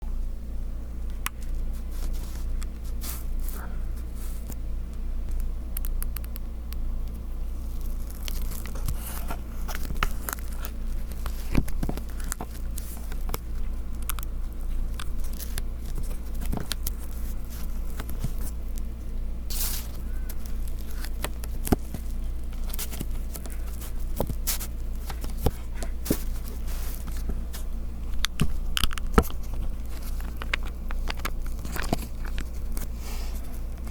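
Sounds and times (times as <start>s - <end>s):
steady low hum: 0.0s - 33.9s
plastic marker cap clicks and creaks: 28.1s - 32.9s.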